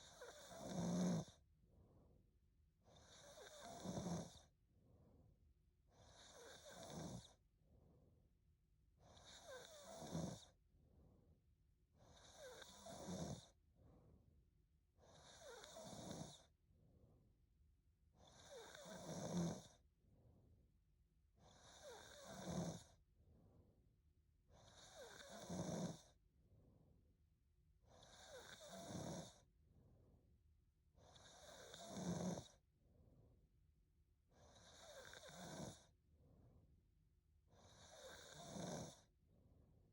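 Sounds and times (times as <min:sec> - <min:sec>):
woman snoring faintly: 0:00.1 - 0:01.4, 0:15.2 - 0:16.5, 0:21.6 - 0:22.9, 0:28.2 - 0:29.4.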